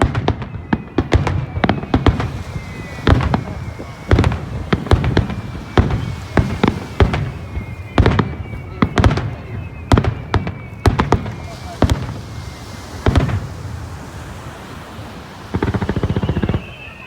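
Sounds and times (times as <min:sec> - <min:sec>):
fireworks bangs: 0:00.0 - 0:17.0.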